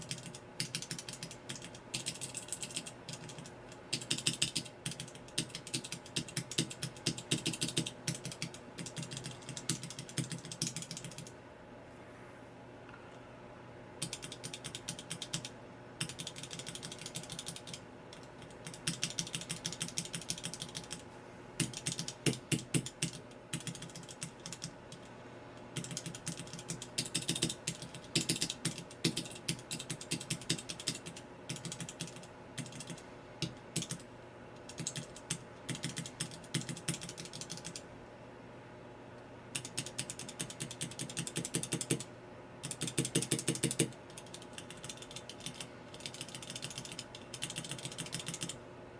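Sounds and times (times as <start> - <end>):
mechanical keyboard switches clicking: 25.8 - 34.0, 39.6 - 42.0, 42.6 - 48.6.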